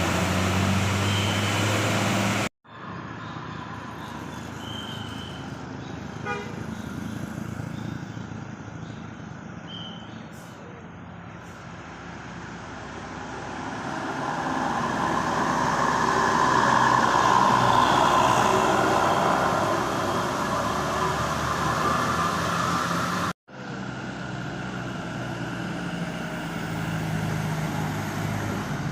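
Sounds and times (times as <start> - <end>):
traffic noise: 0.0 - 28.9
bus horn sounding: 6.2 - 6.8.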